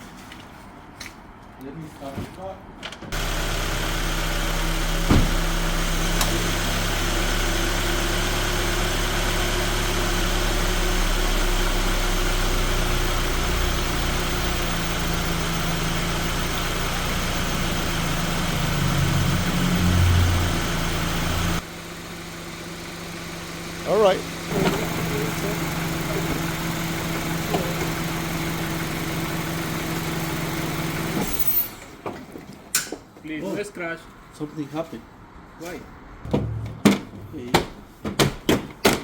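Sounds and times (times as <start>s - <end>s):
car engine idling: 3.2s - 31.1s, 36.3s - 37.5s.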